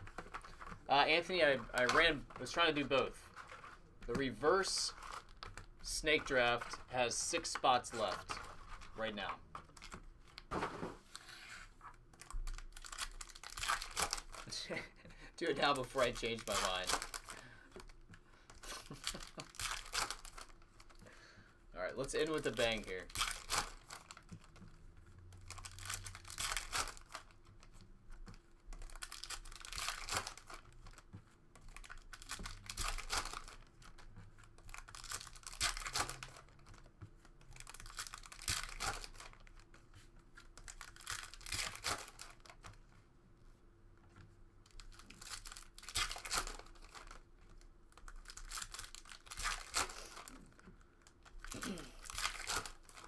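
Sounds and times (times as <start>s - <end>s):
wrappers ripping and crinkling: 12.2s - 14.6s, 15.5s - 21.0s, 22.0s - 31.1s, 31.7s - 39.8s, 40.4s - 42.8s, 44.6s - 53.0s.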